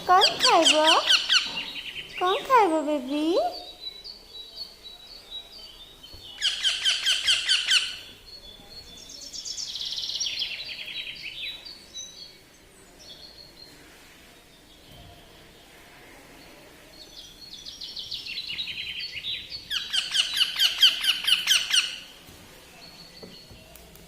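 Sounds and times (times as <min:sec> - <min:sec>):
parrot chirping: 0:00.0 - 0:02.6, 0:06.4 - 0:08.2, 0:18.1 - 0:22.1.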